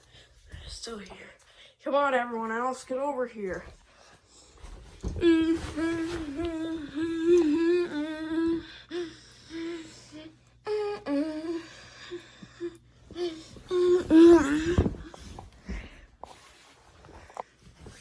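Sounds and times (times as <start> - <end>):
person humming: 5.1 - 15.1.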